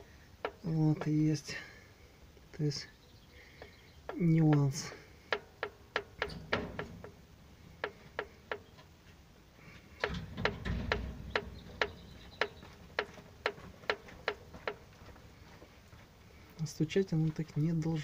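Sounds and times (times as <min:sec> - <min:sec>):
sharp metallic clicks: 0:03.6 - 0:08.9, 0:10.0 - 0:14.9.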